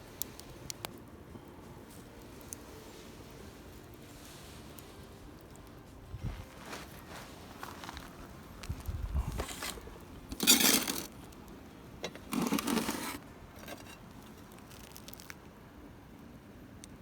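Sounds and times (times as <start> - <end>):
short rustling scrapes: 6.2 - 11.2, 12.1 - 14.0.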